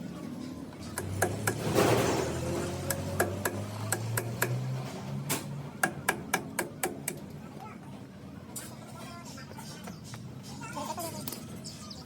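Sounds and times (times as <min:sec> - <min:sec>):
hard parts tapping and clicking: 0:00.8 - 0:07.4.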